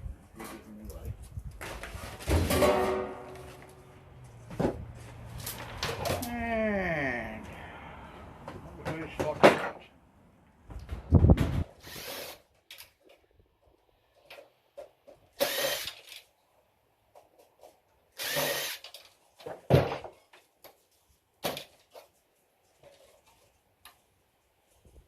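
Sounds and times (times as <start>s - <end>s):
cordless drill running: 11.8s - 12.4s, 15.4s - 16.1s, 18.2s - 18.9s.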